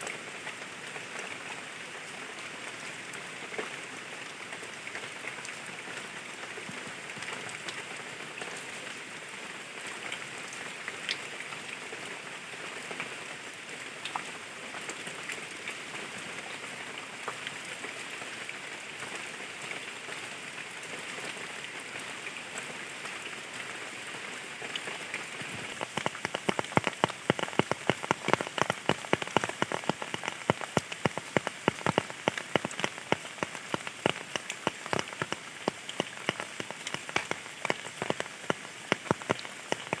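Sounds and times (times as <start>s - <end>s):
single raindrops: 24.7s - 40.0s
rain hissing: 24.8s - 40.0s
large drops pattering on a surface: 25.5s - 40.0s.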